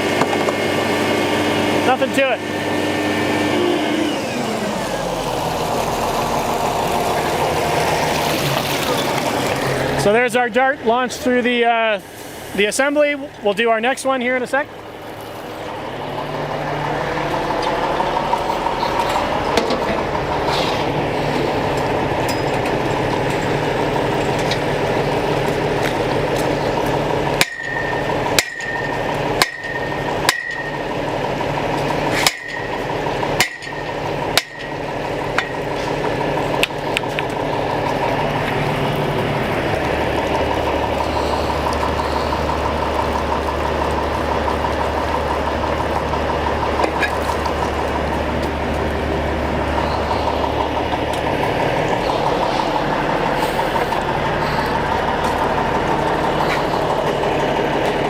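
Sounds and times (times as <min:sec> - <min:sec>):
truck engine running: 0:00.0 - 0:58.0
sharp metallic knocks: 0:27.4 - 0:31.0, 0:32.1 - 0:36.0.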